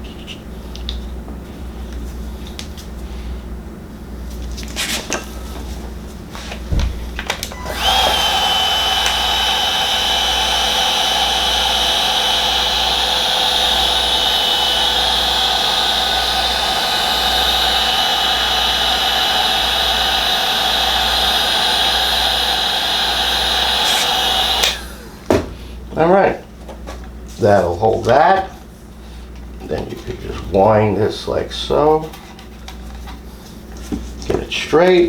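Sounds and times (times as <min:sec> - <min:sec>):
heat gun whining: 0:06.5 - 0:26.1.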